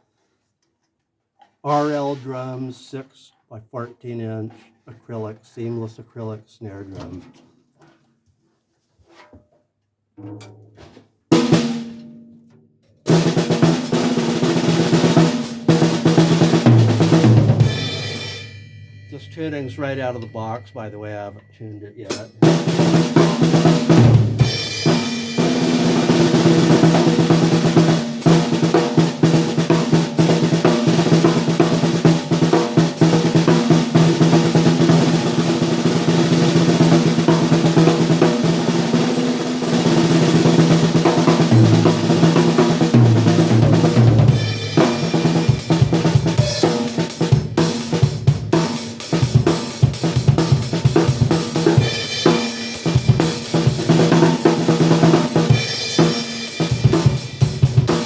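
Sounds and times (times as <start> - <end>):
snare drum strokes and rolls: 13.1 - 18.3, 22.1 - 58.0
lower drum notes: 13.1 - 58.0
bass drum: 40.1 - 46.8.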